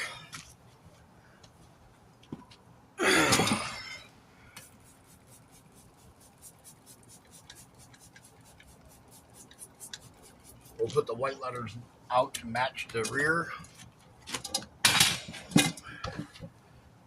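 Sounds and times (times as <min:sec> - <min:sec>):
brush scrubbing a tire: 0:04.6 - 0:11.3.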